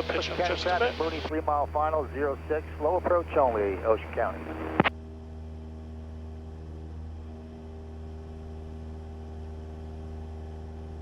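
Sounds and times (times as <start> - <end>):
airplane engine droning: 0.0 - 11.0.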